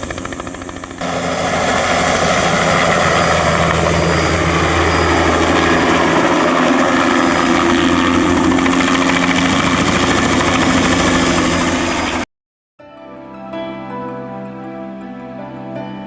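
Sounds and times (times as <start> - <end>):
helicopter engine and rotor: 0.0 - 12.3.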